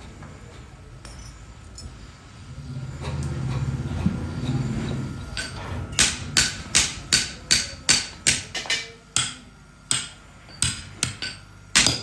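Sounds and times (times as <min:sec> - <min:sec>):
hammer striking steel: 0:05.4 - 0:12.0.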